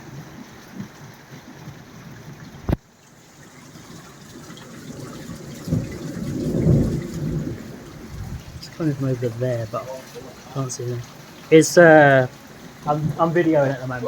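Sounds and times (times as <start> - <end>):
heavy rain: 0.0 - 14.0
water gushing from a drainpipe: 0.0 - 14.0
low rumble of thunder: 3.8 - 11.2, 12.4 - 14.0.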